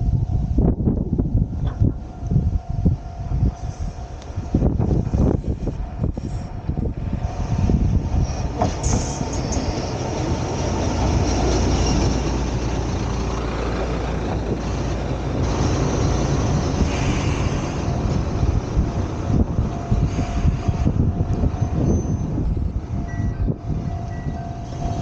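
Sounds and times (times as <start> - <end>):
diesel railcar rumbling: 0.0 - 25.0.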